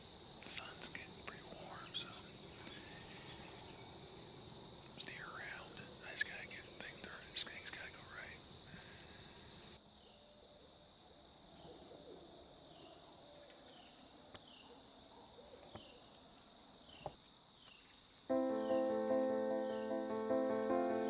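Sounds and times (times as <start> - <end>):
background music: 18.3 - 21.0.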